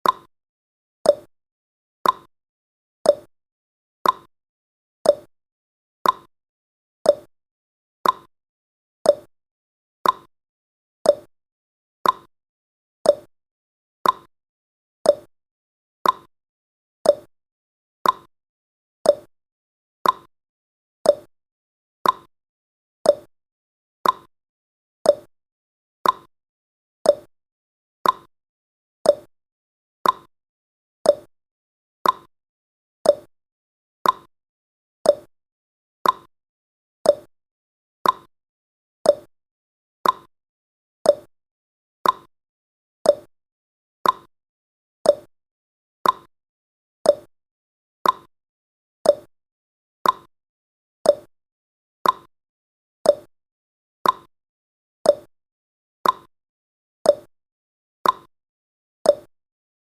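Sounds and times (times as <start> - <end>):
timer tick-tock: 0.0 - 0.3, 1.0 - 1.3, 2.0 - 2.3, 3.0 - 3.3, 4.0 - 4.3, 5.0 - 5.3, 6.0 - 6.3, 7.0 - 7.3, 8.0 - 8.3, 9.0 - 9.3, 10.0 - 10.3, 11.0 - 11.3, 12.0 - 12.3, 13.0 - 13.3, 14.0 - 14.3, 15.0 - 15.3, 16.0 - 16.3, 17.0 - 17.3, 18.0 - 18.3, 19.0 - 19.3, 20.0 - 20.3, 21.0 - 21.3, 22.0 - 22.3, 23.0 - 23.3, 24.0 - 24.3, 25.0 - 25.3, 26.0 - 26.3, 27.0 - 27.3, 28.0 - 28.3, 29.0 - 29.3, 30.0 - 30.3, 31.0 - 31.3, 32.0 - 32.3, 33.0 - 33.3, 34.0 - 34.3, 35.0 - 35.3, 36.0 - 36.3, 37.0 - 37.3, 38.0 - 38.3, 39.0 - 39.3, 40.0 - 40.3, 41.0 - 41.3, 42.0 - 42.3, 43.0 - 43.3, 44.0 - 44.3, 45.0 - 45.3, 46.0 - 46.3, 47.0 - 47.3, 48.0 - 48.3, 49.0 - 49.3, 50.0 - 50.3, 51.0 - 51.3, 52.0 - 52.3, 53.0 - 53.3, 54.0 - 54.3, 55.0 - 55.3, 56.0 - 56.3, 57.1 - 57.3, 58.0 - 58.3, 59.1 - 59.3.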